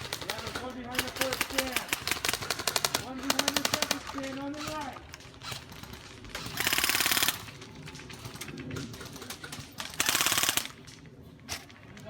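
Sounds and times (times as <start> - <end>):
airsoft gun full-auto bursts: 0.0 - 7.5, 9.9 - 10.8
scattered faint shots: 0.0 - 12.0.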